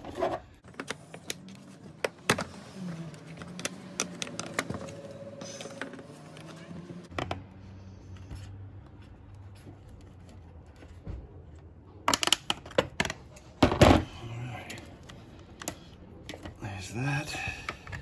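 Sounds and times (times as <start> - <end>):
plastic clatter and knocks: 12.1 - 14.1.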